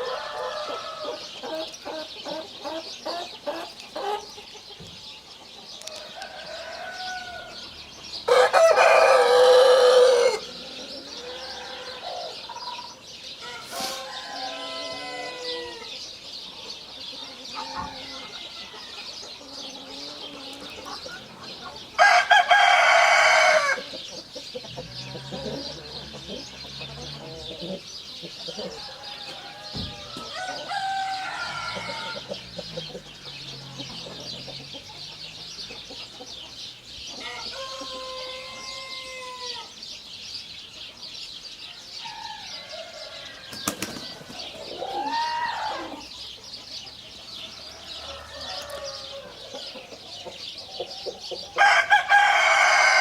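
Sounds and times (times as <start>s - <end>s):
rooster crowing: 0.0s - 1.3s, 6.1s - 12.5s, 13.4s - 16.0s, 22.0s - 23.9s, 24.8s - 27.8s, 28.5s - 34.9s, 37.2s - 39.7s, 44.8s - 46.1s, 47.5s - 49.7s, 51.6s - 53.0s
chickens clucking: 0.0s - 53.0s.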